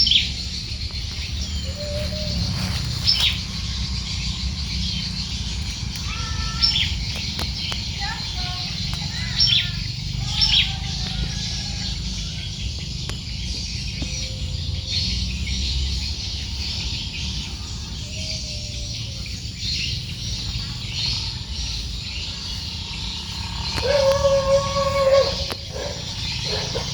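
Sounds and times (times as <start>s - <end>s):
whistled bird notes: 0.0s - 3.4s
birds chirping: 0.0s - 26.9s.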